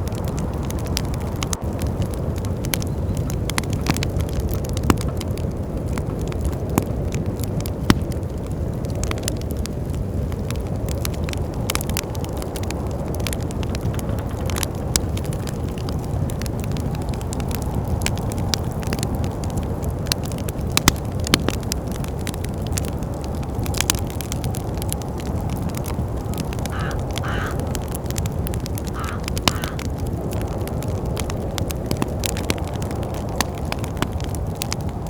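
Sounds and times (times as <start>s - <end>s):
wood fire crackling: 0.0s - 35.0s
wind rushing: 10.2s - 35.0s.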